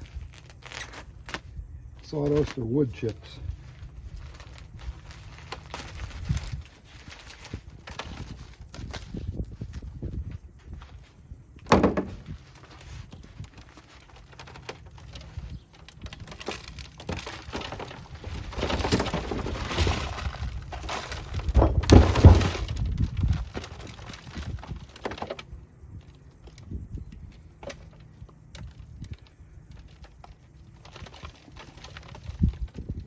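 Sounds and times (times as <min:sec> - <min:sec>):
rustling of wrapping and sawdust: 0:00.0 - 0:33.0
thumps: 0:11.6 - 0:12.4, 0:16.1 - 0:24.1.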